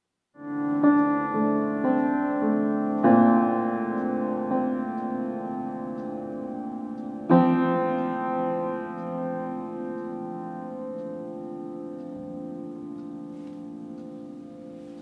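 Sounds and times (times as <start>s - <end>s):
slow sustained piano chords: 0.4s - 15.0s.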